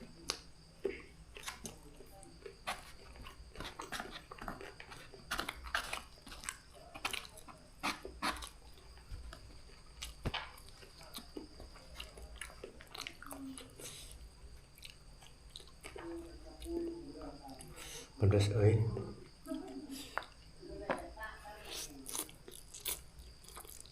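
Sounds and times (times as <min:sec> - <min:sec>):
person chewing noodles: 0:00.0 - 0:16.8, 0:21.7 - 0:23.9.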